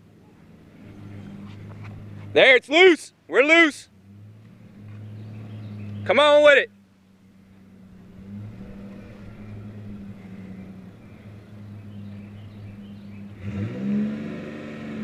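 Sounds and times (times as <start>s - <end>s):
machine engine idling and revving: 3.9s - 15.0s.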